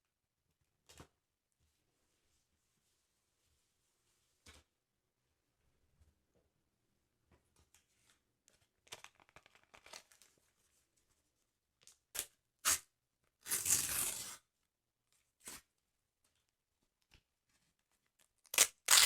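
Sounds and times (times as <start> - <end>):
paper crinkling: 8.8 - 10.4
paper tearing: 13.4 - 14.4, 18.6 - 19.0.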